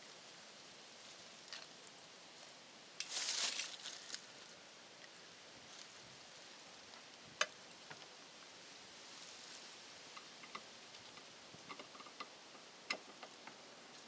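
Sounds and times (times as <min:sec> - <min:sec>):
low steady hiss: 0:00.0 - 0:14.0
scraping rustle: 0:03.0 - 0:04.5.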